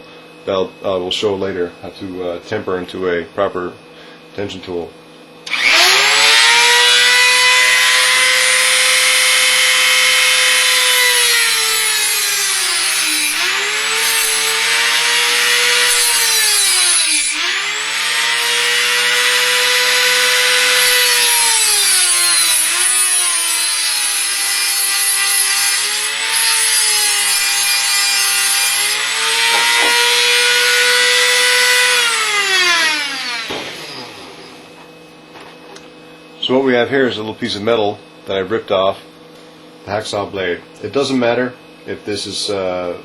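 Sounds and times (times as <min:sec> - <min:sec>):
rotary tool cutting metal: 0:05.5 - 0:34.7.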